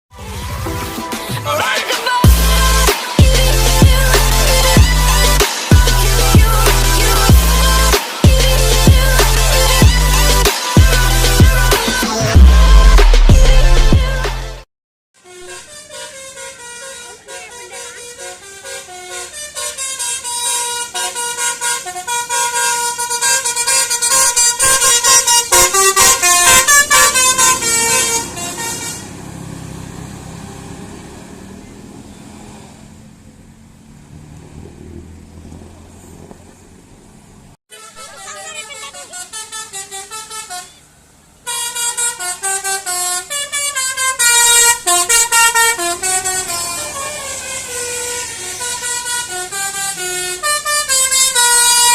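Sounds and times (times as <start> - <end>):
multi-tone bus air horns: 0.2 - 14.6, 15.2 - 31.0, 37.7 - 51.9.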